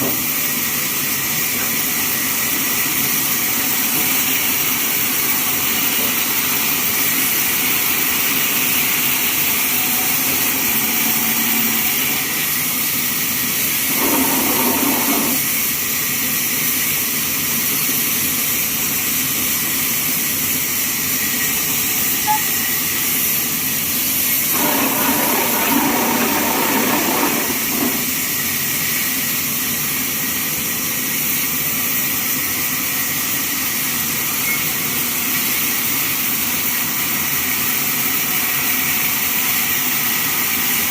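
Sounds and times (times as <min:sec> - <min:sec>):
band sawmill running: 0:00.0 - 0:40.9
lower mechanical sound burst: 0:13.6 - 0:15.5, 0:24.3 - 0:28.3.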